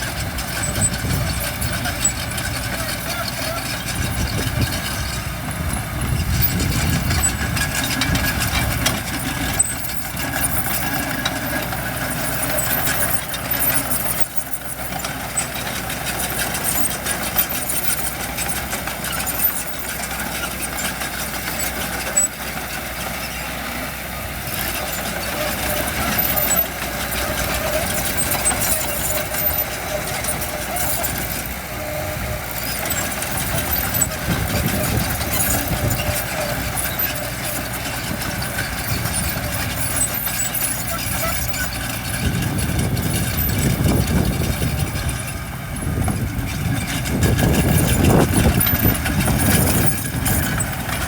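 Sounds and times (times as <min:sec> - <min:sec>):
heavy diesel engines running: 0:00.0 - 0:51.0.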